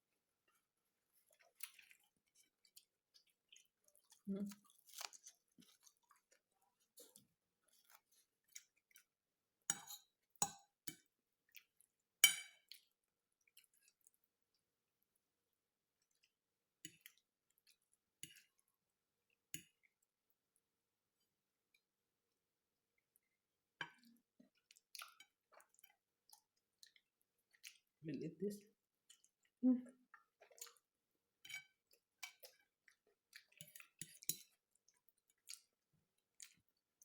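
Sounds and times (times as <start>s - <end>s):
chewing and smacking mouth sounds: 0.4s - 9.1s, 23.9s - 28.0s, 28.9s - 31.0s, 31.6s - 37.0s.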